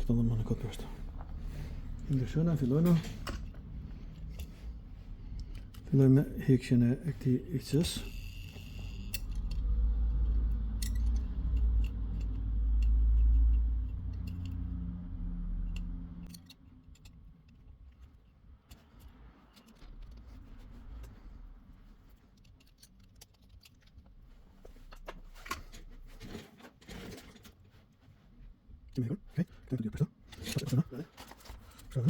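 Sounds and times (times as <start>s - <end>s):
low rumble: 0.0s - 8.1s
hand tools clicking on circuit board: 7.8s - 20.2s.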